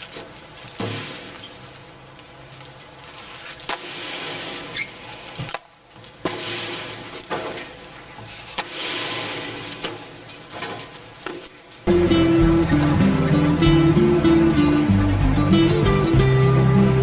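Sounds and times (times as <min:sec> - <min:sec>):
tree-cutting machine running: 0:11.9 - 0:17.0.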